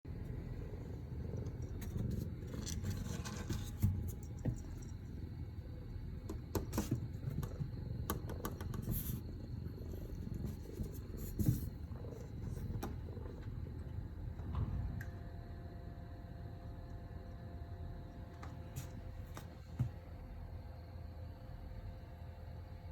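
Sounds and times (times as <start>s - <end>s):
cat purring: 0.1s - 14.9s.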